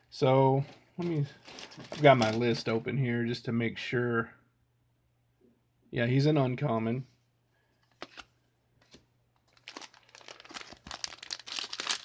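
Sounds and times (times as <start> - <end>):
foil wrapper crinkling: 1.0 - 2.6, 9.4 - 12.0.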